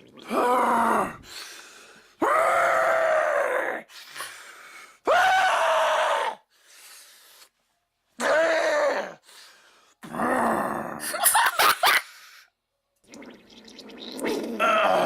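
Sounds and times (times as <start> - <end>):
person groaning: 0.2 - 1.2, 10.0 - 11.1, 14.6 - 15.0.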